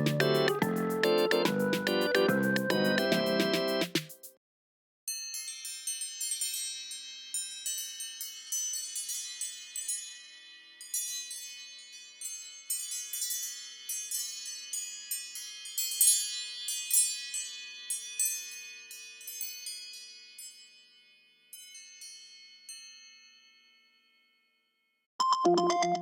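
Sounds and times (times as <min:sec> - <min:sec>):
phone ringtone chimes: 0:00.0 - 0:03.8, 0:25.2 - 0:26.0.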